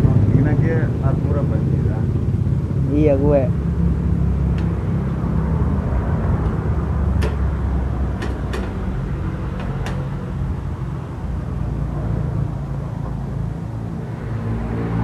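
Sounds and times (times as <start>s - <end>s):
sharp engine knocks: 6.4s - 10.2s.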